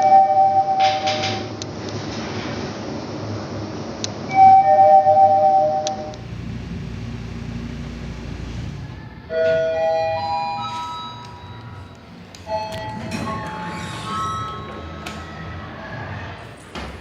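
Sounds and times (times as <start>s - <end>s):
elevator chime rising notes: 4.3s - 6.2s, 9.2s - 15.1s
low rumble: 6.1s - 13.2s.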